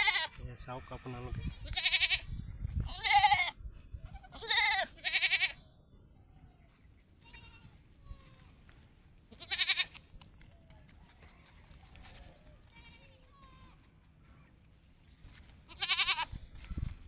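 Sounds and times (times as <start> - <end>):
goat bleating: 0.0 - 0.4, 1.4 - 5.6, 7.2 - 8.6, 9.3 - 10.0, 12.6 - 13.9, 15.6 - 16.4.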